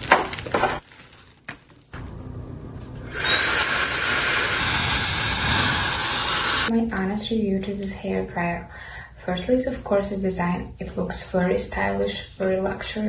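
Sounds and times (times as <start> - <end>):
hair dryer blowing: 3.1 - 6.7.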